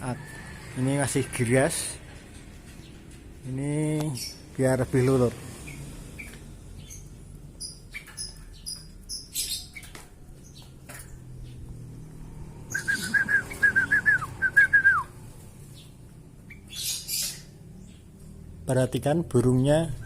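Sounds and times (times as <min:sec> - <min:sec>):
bird whistling quick notes: 0:12.7 - 0:15.1.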